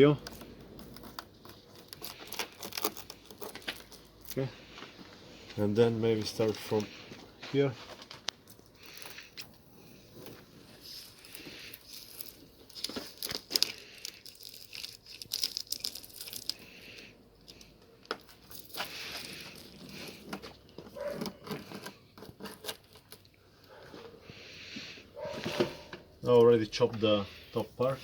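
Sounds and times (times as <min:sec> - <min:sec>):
knife cutting through tape: 0:00.2 - 0:04.1, 0:21.0 - 0:23.2
glass crinkling and clicking: 0:11.0 - 0:22.0.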